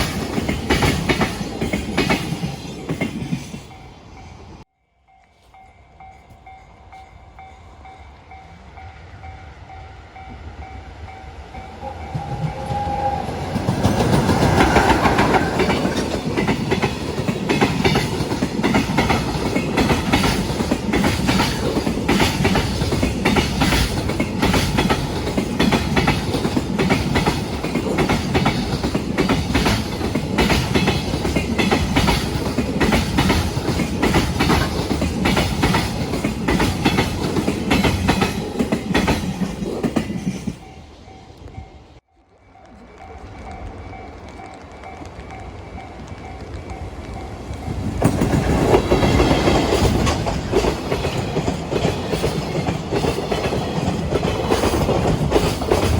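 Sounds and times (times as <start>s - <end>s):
train wheels clacking on rails: 0.0s - 4.6s, 11.1s - 41.6s, 43.4s - 55.9s
crossing warning bell: 3.5s - 55.9s
train horn: 11.6s - 15.6s.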